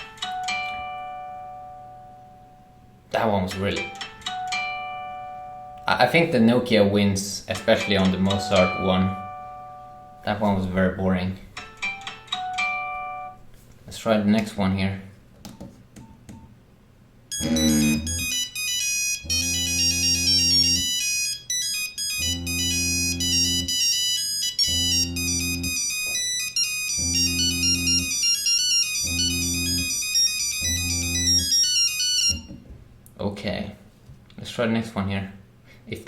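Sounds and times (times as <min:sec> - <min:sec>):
electronic phone ringtone: 0:08.3 - 0:10.2, 0:11.8 - 0:13.4, 0:17.3 - 0:32.6.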